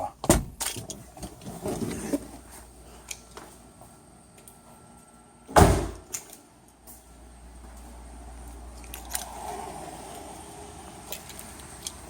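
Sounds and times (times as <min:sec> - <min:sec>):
car door slamming: 0:05.5 - 0:06.0.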